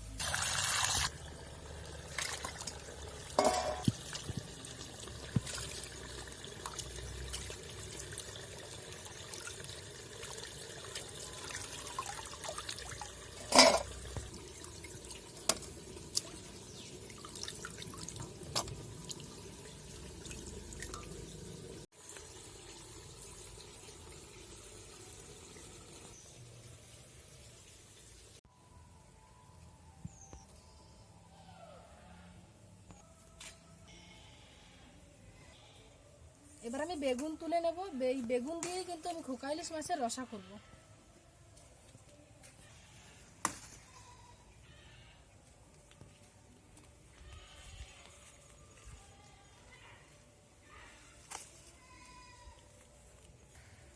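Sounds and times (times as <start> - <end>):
water sloshing and dripping: 0.2 - 26.1
short splashes and clinks: 2.0 - 4.4, 10.9 - 14.2.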